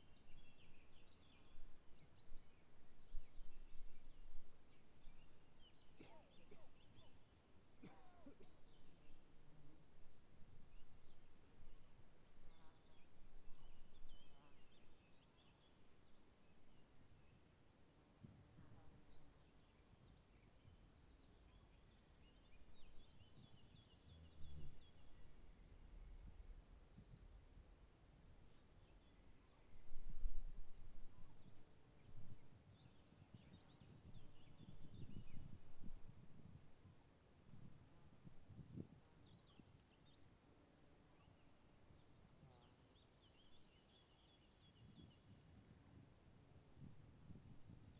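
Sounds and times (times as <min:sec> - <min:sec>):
insects chirring: 0:00.0 - 0:47.9
wind buffeting microphone: 0:33.3 - 0:36.8, 0:46.8 - 0:47.9.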